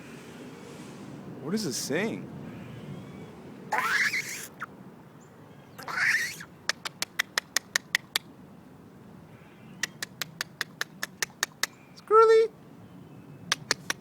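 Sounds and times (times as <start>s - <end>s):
squirrel rasping call: 3.7s - 4.7s, 5.8s - 8.2s
squirrel sharp chips: 3.7s - 4.7s, 5.8s - 8.2s, 13.5s - 14.0s.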